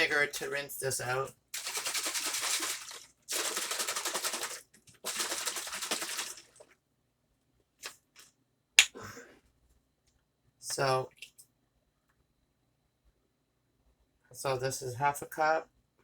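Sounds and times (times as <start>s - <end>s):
liquid sloshing in shaken bottle: 1.6s - 6.7s.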